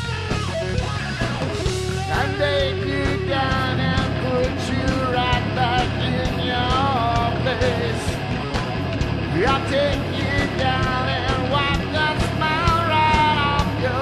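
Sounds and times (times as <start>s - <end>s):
distorted electric guitars: 0.0s - 14.0s
drum beat: 0.0s - 14.0s
heavy metal band playing live: 0.0s - 14.0s
sliding melody line: 1.6s - 8.4s.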